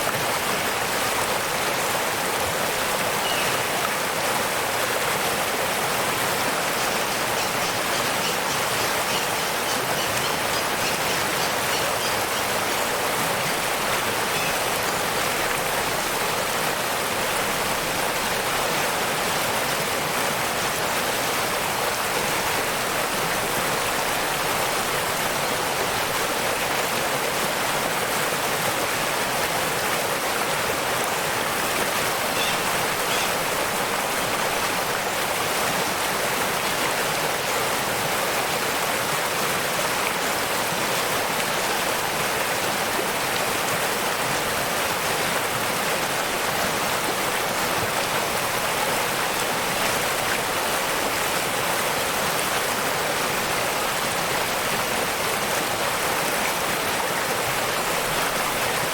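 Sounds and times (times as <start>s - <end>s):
waterfall rushing: 0.0s - 58.9s.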